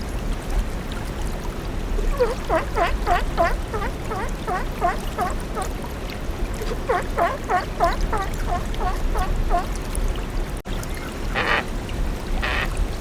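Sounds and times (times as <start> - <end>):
animal short calls: 2.1 - 5.7, 6.6 - 9.7, 11.4 - 11.7.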